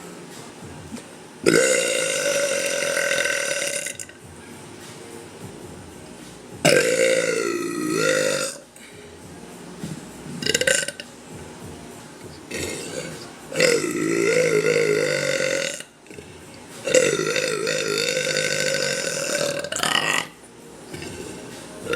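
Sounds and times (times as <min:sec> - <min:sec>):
woman burping: 0:01.4 - 0:04.1, 0:06.7 - 0:08.6, 0:10.4 - 0:11.1, 0:12.5 - 0:15.9, 0:16.9 - 0:21.4.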